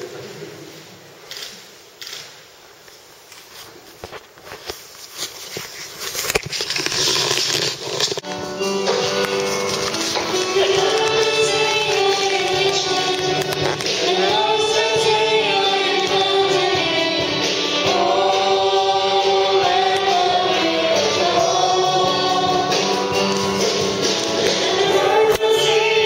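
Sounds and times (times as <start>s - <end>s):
musical accompaniment: 8.2s - 26.0s
choir singing a hymn: 10.2s - 26.0s.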